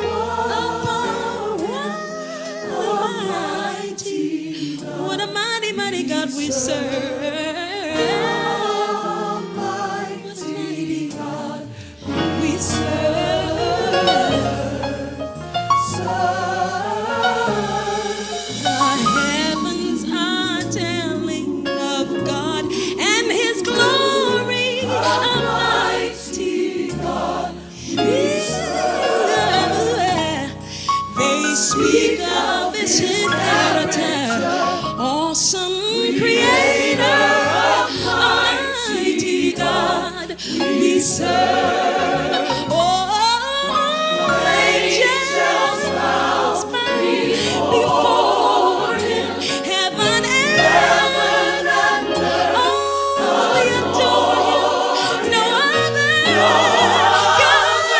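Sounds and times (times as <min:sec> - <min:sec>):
gospel choir singing: 0:00.0 - 0:57.9
instrumental backing: 0:04.9 - 0:57.9
bass line: 0:12.4 - 0:30.7.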